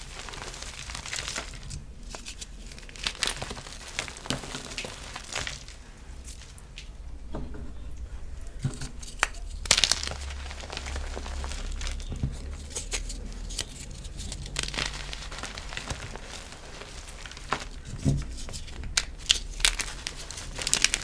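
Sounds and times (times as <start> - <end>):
chalk block crunching: 8.6 - 21.0.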